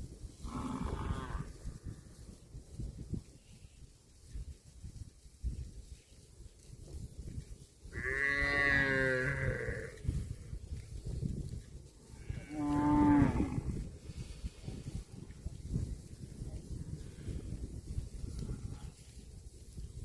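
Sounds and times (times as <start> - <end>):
cow mooing: 8.0 - 9.9, 12.2 - 13.6.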